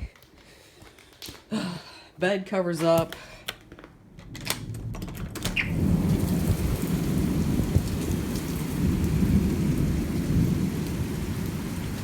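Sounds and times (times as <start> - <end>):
low thunder rumble: 4.3 - 12.0
heavy rain downpour: 4.4 - 12.0.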